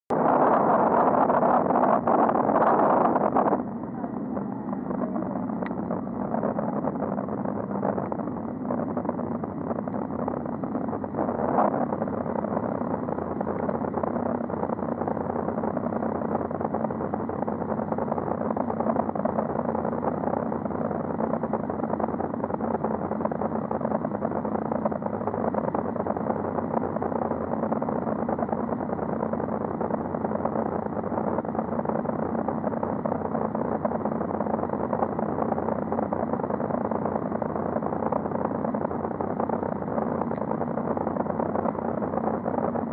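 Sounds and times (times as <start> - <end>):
road traffic rushing: 0.7 - 16.6.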